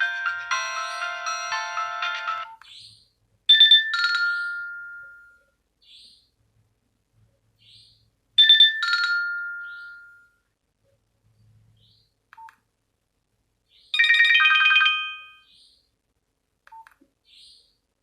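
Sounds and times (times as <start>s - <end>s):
phone ringtone chime: 0.0s - 2.6s, 3.5s - 5.4s, 8.4s - 10.4s, 14.0s - 15.5s.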